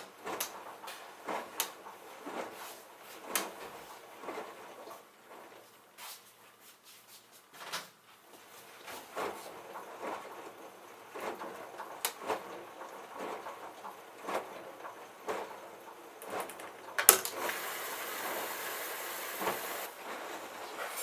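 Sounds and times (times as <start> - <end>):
dispenser mechanism clicking: 16.2 - 19.9
water hissing into dispenser: 17.2 - 20.0.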